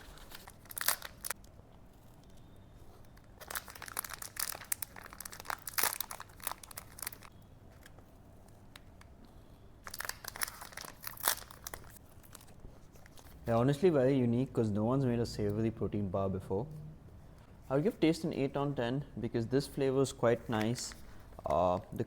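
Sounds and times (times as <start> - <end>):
plastic wrapper crinkling and tearing: 0.0 - 1.5, 3.1 - 8.0, 9.8 - 13.4.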